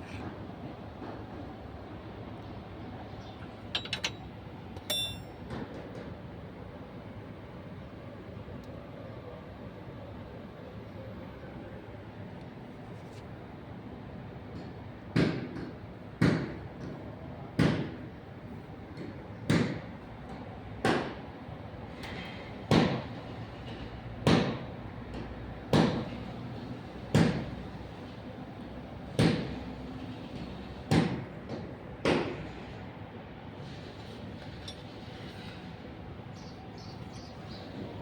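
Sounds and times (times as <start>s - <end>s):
steady background hum: 0.0s - 38.0s
hammer blows ringing: 3.8s - 5.6s.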